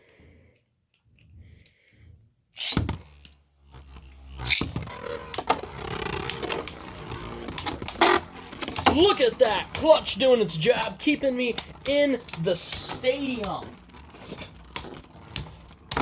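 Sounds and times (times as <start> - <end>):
spinning tops grinding rattle: 2.6 - 16.0
spinning tops launched: 2.6 - 16.0
sharp collision clicks: 4.4 - 16.0.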